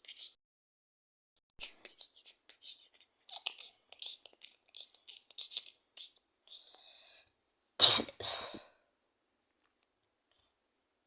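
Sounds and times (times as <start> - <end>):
faint whispery sounds: 0.0 - 0.4, 1.6 - 7.4
person coughing: 7.8 - 8.7.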